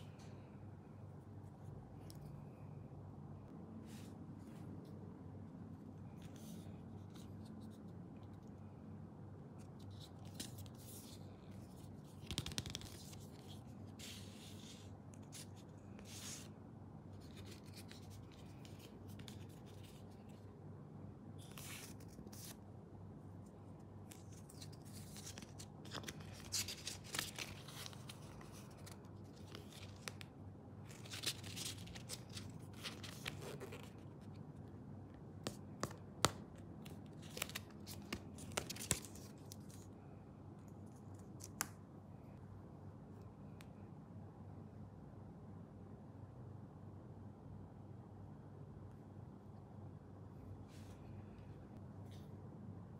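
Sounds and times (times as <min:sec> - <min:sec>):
paper and plastic rustling: 0:24.1 - 0:34.2.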